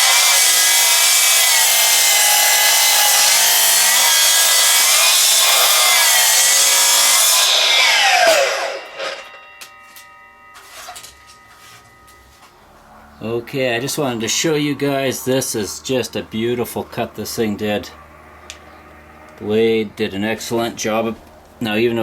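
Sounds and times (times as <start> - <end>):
mitre saw cutting log: 0.0 - 9.8
saw motor winding down: 0.0 - 22.0.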